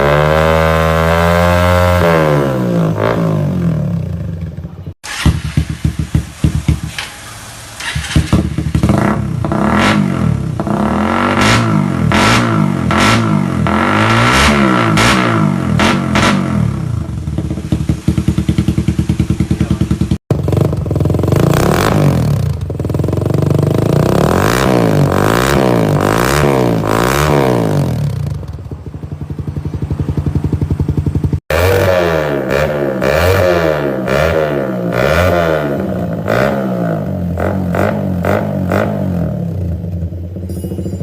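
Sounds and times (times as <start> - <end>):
motorcycle engine revving: 0.0 - 41.0
motorcycle engine idling: 3.8 - 9.6, 16.7 - 24.1, 28.0 - 31.4, 39.5 - 41.0.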